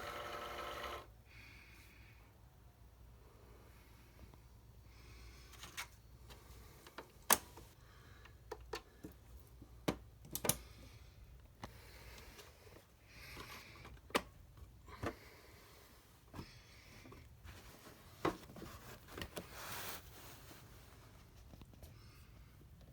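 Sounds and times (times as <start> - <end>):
cutting machine clicking: 0.0 - 1.1
cutting machine whirring: 0.0 - 1.1.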